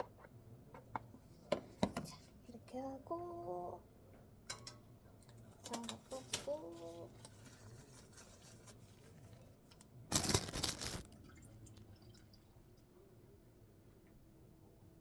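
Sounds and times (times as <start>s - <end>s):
kitchen clicks and taps: 4.5s - 4.8s.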